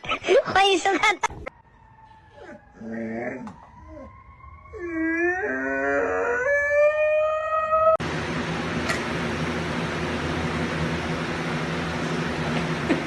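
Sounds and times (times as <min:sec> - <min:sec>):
dog howling: 0:02.3 - 0:08.0.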